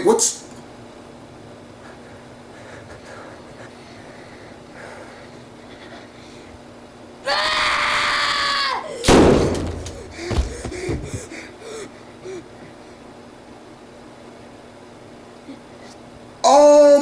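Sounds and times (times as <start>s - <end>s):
person screaming: 7.3s - 9.0s
small thuds: 9.1s - 11.4s.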